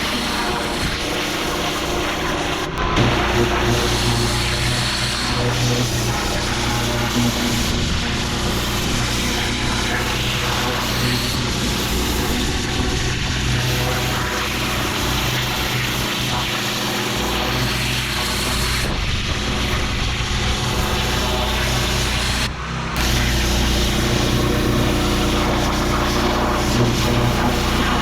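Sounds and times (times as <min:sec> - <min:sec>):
high-pressure water spray hissing: 0:00.0 - 0:28.0
pressure washer engine drone: 0:00.0 - 0:28.0.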